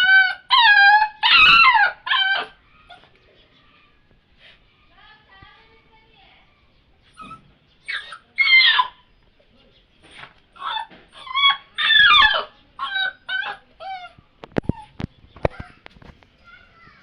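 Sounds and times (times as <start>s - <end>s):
puppies yelping and whining: 0.0s - 3.2s, 7.0s - 9.1s, 10.0s - 15.9s.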